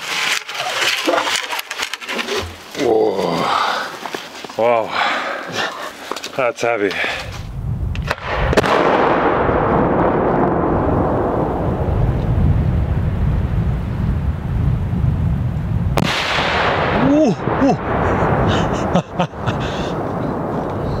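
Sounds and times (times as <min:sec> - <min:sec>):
fireworks rumble and crackle: 0:00.0 - 0:21.0
fireworks bangs: 0:08.0 - 0:12.4, 0:16.0 - 0:21.0.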